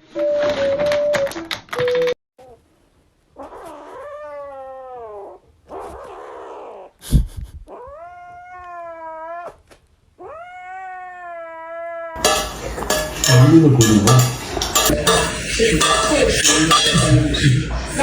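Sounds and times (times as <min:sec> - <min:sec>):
cat yowling: 0:03.4 - 0:06.9, 0:07.7 - 0:09.6, 0:10.2 - 0:12.2.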